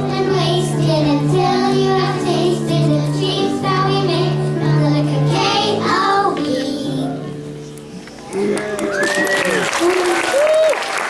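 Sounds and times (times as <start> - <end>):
children singing: 0.0 - 7.2
low musical accompaniment: 0.0 - 8.9.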